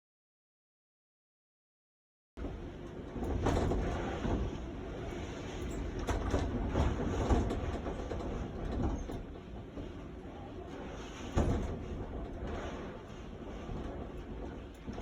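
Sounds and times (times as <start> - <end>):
wind gusting rumble: 2.4 - 15.0.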